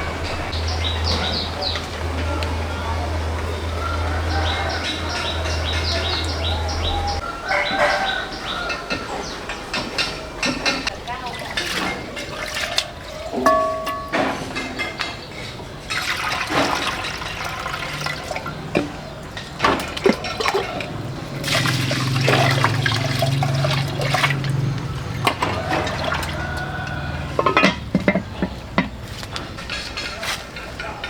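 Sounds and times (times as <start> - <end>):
water running and splashing: 0.0 - 7.2, 10.9 - 14.2, 15.7 - 27.8
knocks and clatters: 18.7 - 31.0.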